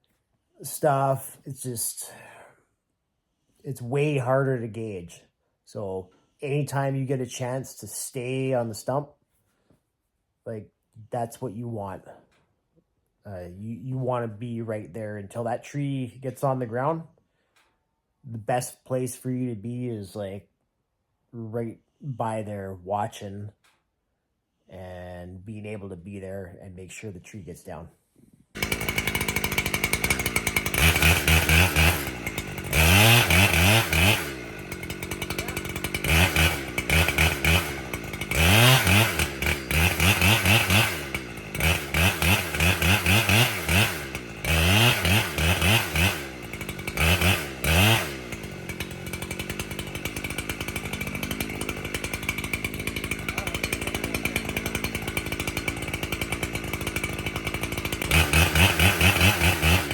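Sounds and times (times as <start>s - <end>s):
chainsaw revving: 0.6s - 2.2s, 8.2s - 8.7s, 28.6s - 59.9s
chainsaw idling: 0.6s - 2.4s, 4.0s - 5.1s, 28.6s - 59.9s.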